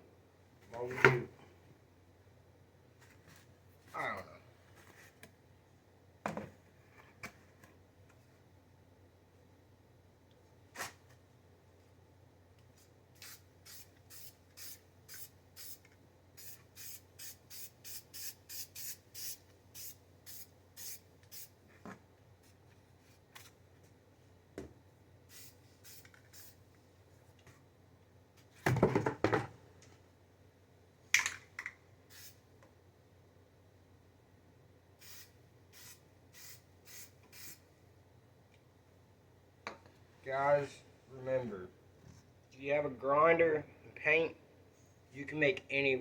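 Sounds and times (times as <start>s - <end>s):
spray paint hissing bursts: 13.2s - 21.6s, 25.3s - 26.6s, 32.1s - 32.4s, 35.0s - 37.6s.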